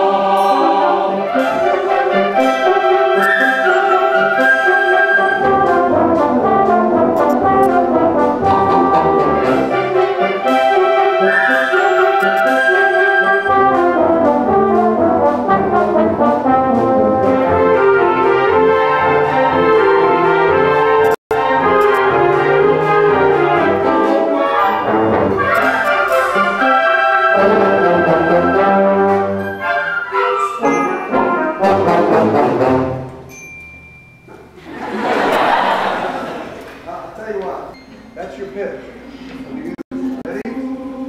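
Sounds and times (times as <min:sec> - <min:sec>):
concert band playing: 0:01.3 - 0:33.0.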